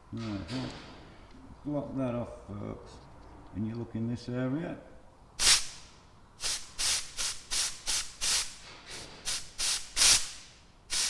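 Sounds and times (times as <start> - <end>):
air hiss bursts: 5.4 - 11.0.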